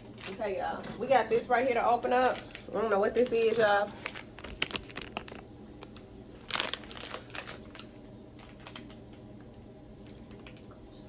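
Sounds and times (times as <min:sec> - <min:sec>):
plastic wrapper crinkling: 0:02.0 - 0:09.2.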